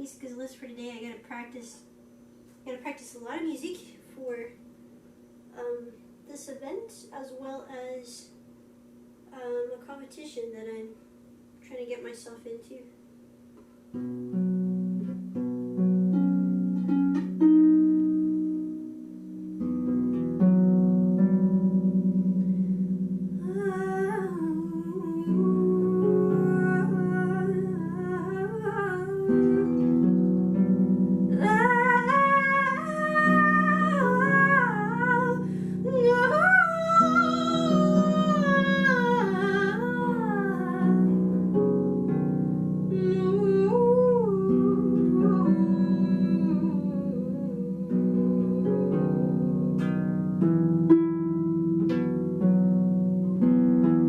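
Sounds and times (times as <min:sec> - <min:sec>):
harp plucked notes: 0:13.9 - 0:54.0
person humming melody: 0:21.2 - 0:41.7, 0:42.8 - 0:52.0.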